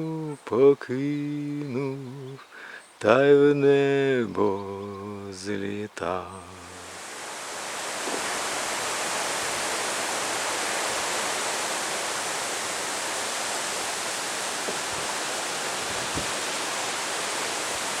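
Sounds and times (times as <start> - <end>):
wind blowing: 6.8 - 18.0.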